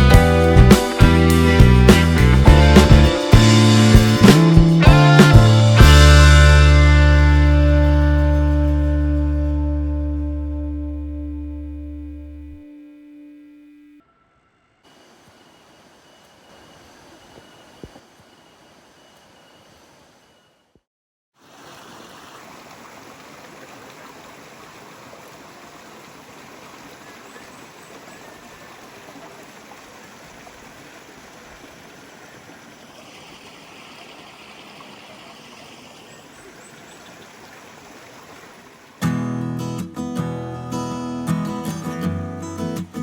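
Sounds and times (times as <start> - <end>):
acoustic guitar music: 0.0 - 14.0, 39.0 - 43.0
flowing water rushing: 14.9 - 20.3, 21.4 - 39.3.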